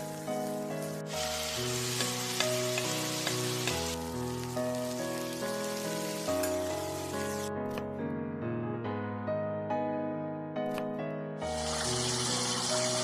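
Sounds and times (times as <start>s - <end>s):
meat sizzling in a hot pan: 0.0s - 7.5s, 11.5s - 13.0s
background music of sustained notes: 0.0s - 13.0s.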